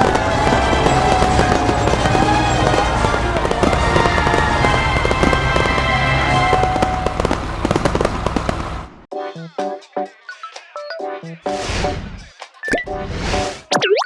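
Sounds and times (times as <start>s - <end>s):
soundtrack music: 0.0s - 7.4s
crackle of clicks and pops: 6.5s - 8.9s.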